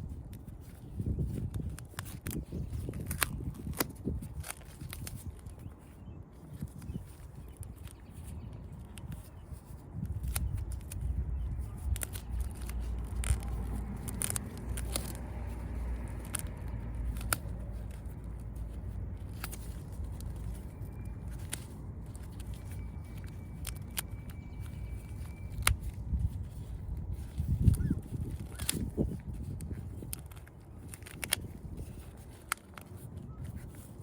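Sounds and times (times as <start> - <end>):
steady low rumble: 0.0 - 34.0
sharp clicks: 6.6 - 33.7.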